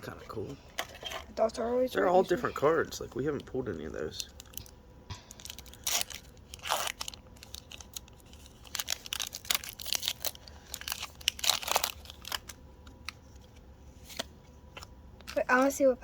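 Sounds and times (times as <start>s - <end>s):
foil wrappers crinkling: 2.9s - 15.8s
cards rustling and clicking: 5.4s - 15.7s.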